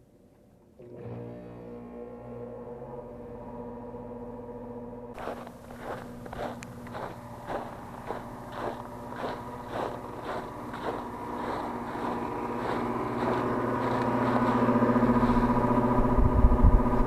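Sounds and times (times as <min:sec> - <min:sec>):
fan motor whooshing and humming: 0:03.5 - 0:17.0.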